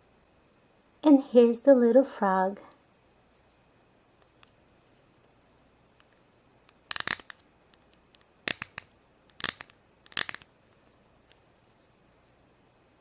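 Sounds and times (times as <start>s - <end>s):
plastic toys clattering: 6.7s - 7.9s, 8.5s - 10.5s.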